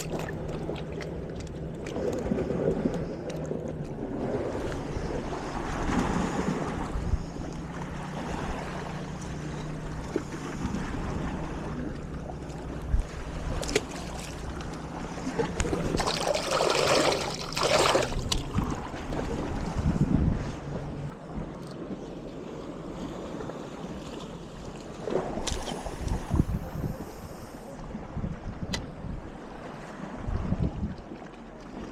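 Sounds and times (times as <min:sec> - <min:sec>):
sea washing at shore: 0:00.0 - 0:31.9
wind on microphone: 0:02.0 - 0:08.7, 0:12.8 - 0:21.5, 0:25.2 - 0:31.2.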